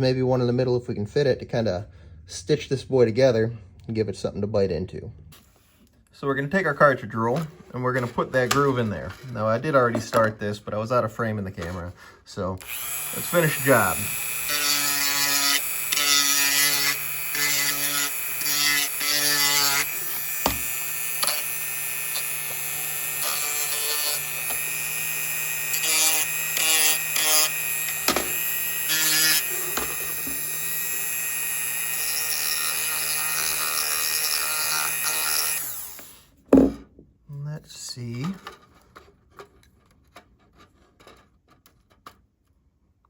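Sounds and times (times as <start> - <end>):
rotary tool grinding plastic: 12.6 - 36.2.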